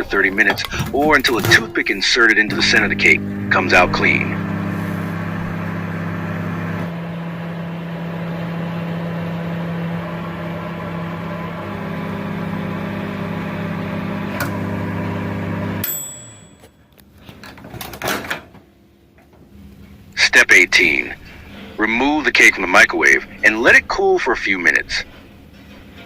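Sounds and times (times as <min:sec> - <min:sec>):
microwave oven humming: 0:00.0 - 0:26.0
microwave high tone: 0:00.4 - 0:17.0.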